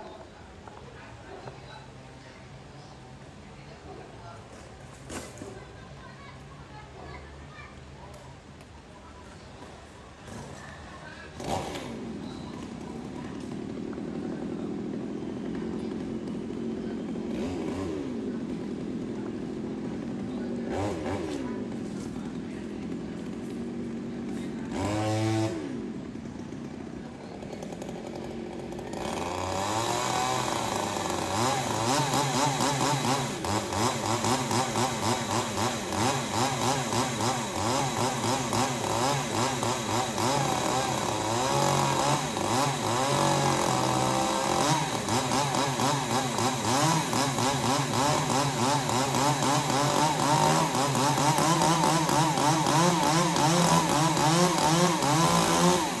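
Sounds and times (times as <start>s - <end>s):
chainsaw revving: 11.3s - 56.0s.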